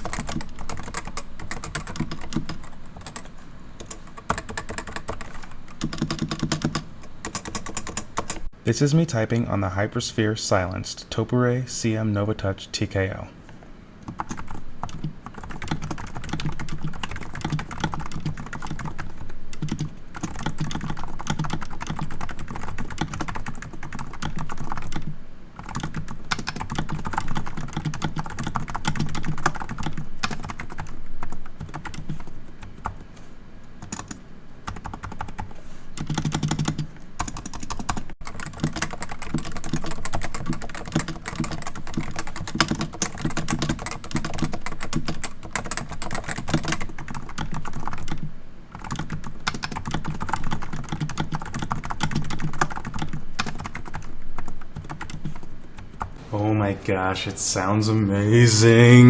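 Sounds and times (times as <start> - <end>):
keyboard typing with soft thuds: 0.0 - 8.5, 14.0 - 33.0, 33.8 - 56.2.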